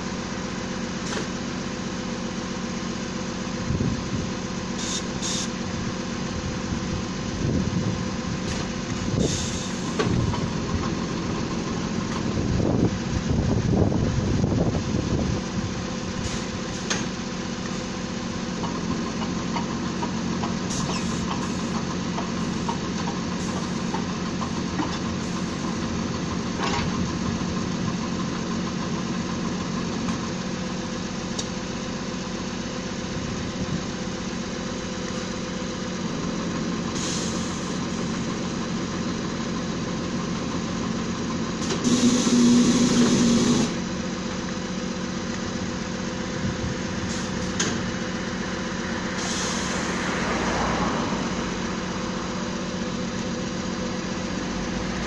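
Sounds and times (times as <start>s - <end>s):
drilling rig engine running: 0.0s - 55.0s
burst with a hiss: 4.8s - 5.6s, 9.2s - 10.0s, 36.9s - 38.1s, 41.6s - 43.8s, 49.2s - 50.0s.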